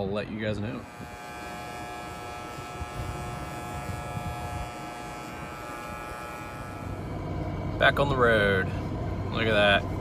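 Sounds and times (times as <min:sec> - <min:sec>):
electric trimmer buzzing: 0:00.6 - 0:07.6.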